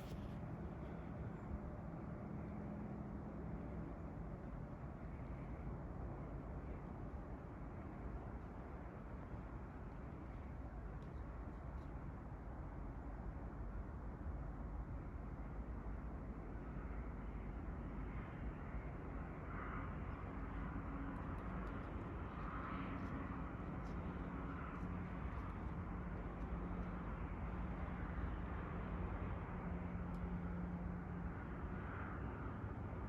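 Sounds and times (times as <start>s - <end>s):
low outdoor rumble: 19.0s - 33.0s.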